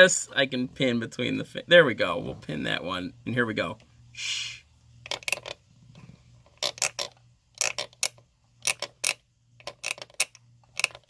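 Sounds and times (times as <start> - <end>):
wooden frog croaker rattling: 5.0 - 11.0.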